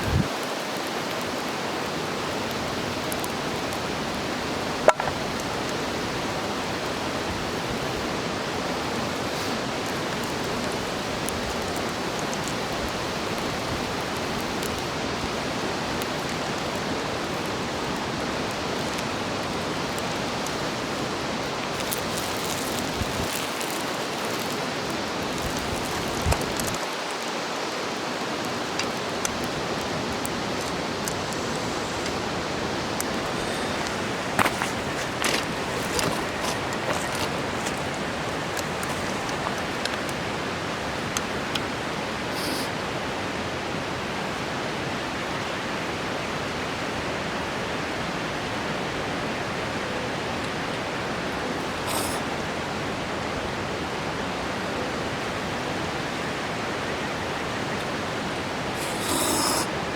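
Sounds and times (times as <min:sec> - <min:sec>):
food sizzling on iron plate: 0:18.6 - 0:26.6, 0:30.5 - 0:39.6, 0:42.3 - 0:42.7, 0:51.8 - 0:52.2, 0:58.8 - 0:59.7.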